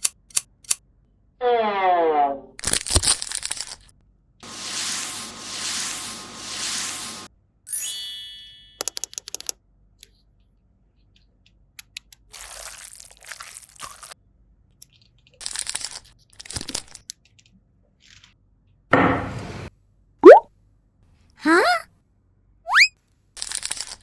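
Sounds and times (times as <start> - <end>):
plastic toy parts clicking: 0.0 - 0.8, 8.8 - 9.6
packaging rustling: 12.3 - 14.2.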